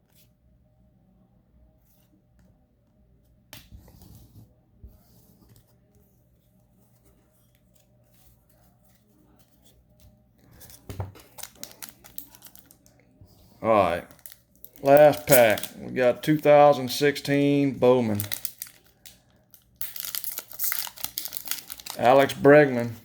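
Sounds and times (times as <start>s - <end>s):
cards and packaging rustling: 6.5s - 23.0s.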